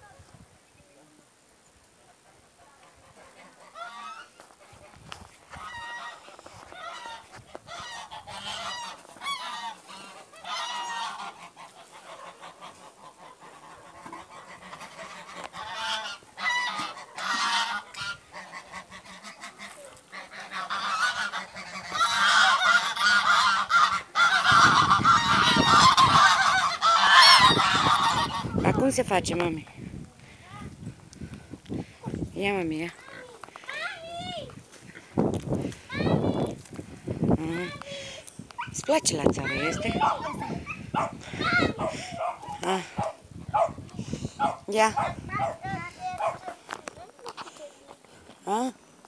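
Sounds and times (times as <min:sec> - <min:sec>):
geese honking: 0:02.2 - 0:29.2, 0:37.6 - 0:45.6.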